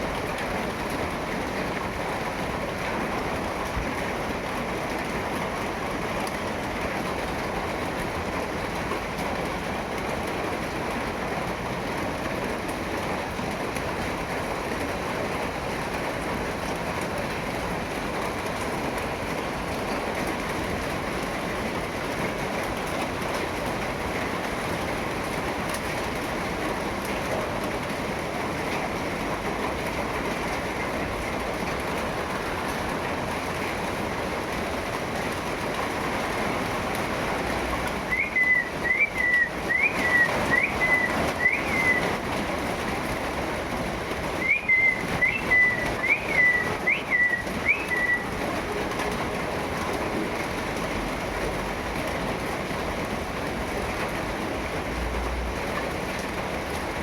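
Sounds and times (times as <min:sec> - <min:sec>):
steady rain: 0:00.0 - 0:57.0
bird chirping: 0:38.1 - 0:42.0, 0:44.4 - 0:48.2.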